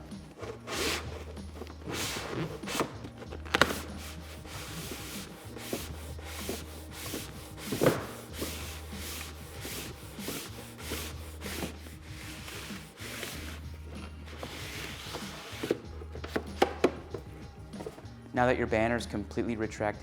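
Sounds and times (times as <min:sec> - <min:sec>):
vinyl banner rubbing and sliding: 0:00.3 - 0:15.8.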